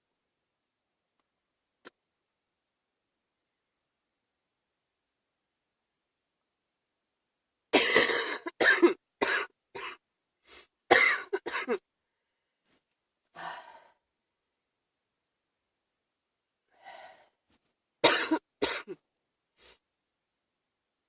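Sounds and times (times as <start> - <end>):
person coughing: 7.8 - 10.0, 10.9 - 11.8, 18.0 - 19.0.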